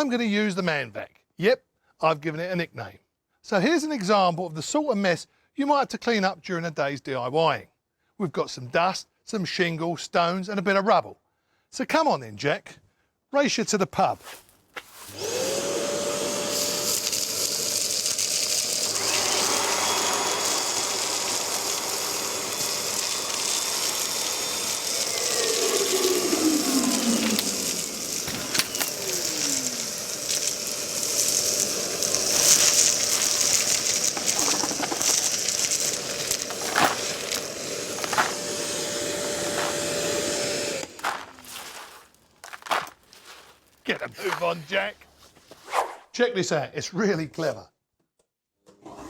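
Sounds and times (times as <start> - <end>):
debris clattering in hose: 14.3 - 44.7
vacuum motor whine: 15.1 - 41.7.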